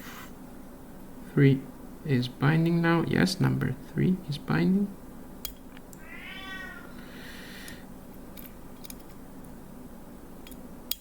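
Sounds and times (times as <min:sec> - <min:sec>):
cat meowing: 0:06.0 - 0:06.9.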